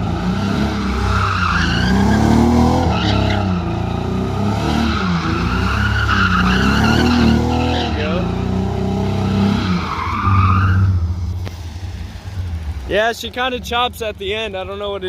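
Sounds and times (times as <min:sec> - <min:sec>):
car engine revving: 0:00.0 - 0:15.0
tyres squealing: 0:00.8 - 0:03.9, 0:04.7 - 0:08.4, 0:09.3 - 0:11.1.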